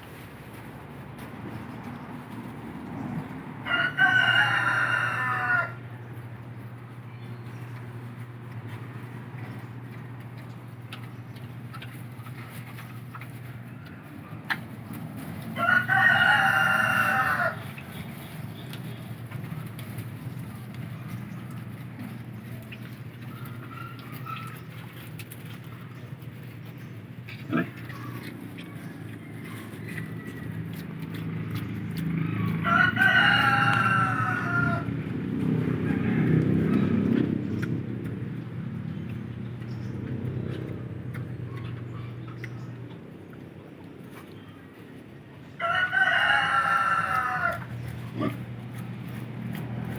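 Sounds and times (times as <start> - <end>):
low background hum: 0.0 - 49.9
rooster crowing: 3.6 - 6.0, 15.5 - 17.7, 32.2 - 37.1, 45.5 - 47.8.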